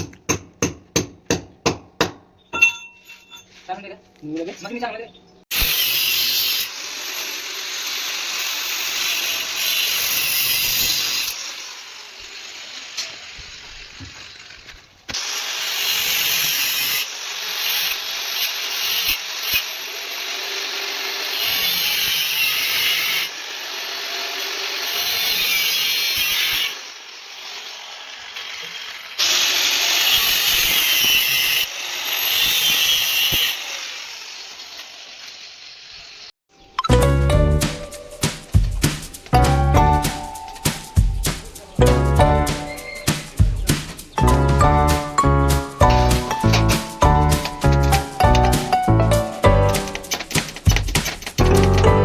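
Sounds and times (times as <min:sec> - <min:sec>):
power tool working steel: 0:05.5 - 0:36.3, 0:44.1 - 0:52.0.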